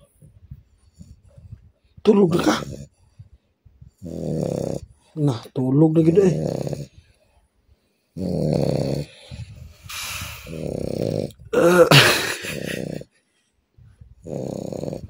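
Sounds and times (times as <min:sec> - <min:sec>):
man snoring loudly: 0:02.3 - 0:02.9, 0:04.0 - 0:05.0, 0:06.0 - 0:07.0, 0:08.2 - 0:13.1, 0:14.2 - 0:15.0.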